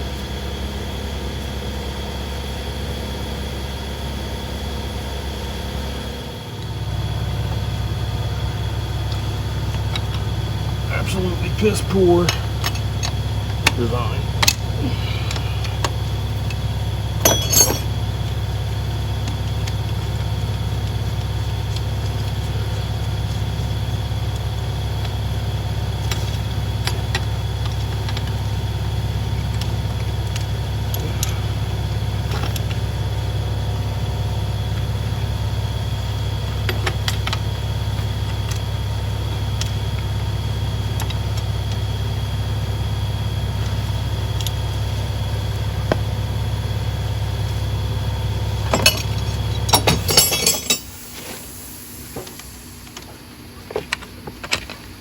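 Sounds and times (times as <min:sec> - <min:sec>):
hand tools clinking on metal: 0:17.2 - 0:17.9, 0:48.7 - 0:51.0.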